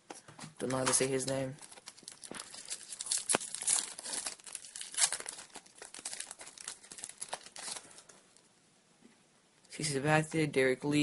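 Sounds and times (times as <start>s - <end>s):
foil wrapper crinkling and tearing: 0.7s - 8.1s.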